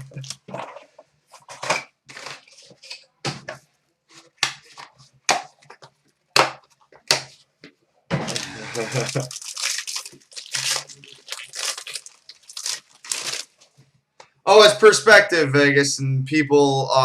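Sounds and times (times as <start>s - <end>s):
wrapper and cardboard crinkling: 0.0s - 3.0s, 8.2s - 13.8s.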